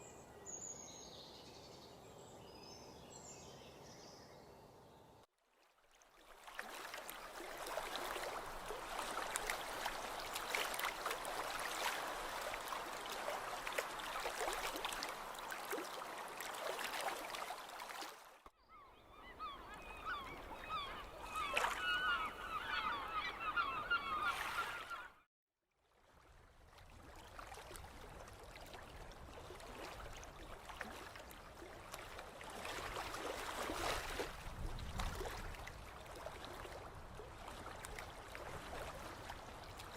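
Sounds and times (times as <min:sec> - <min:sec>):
flock of birds calling: 0:19.1 - 0:25.1.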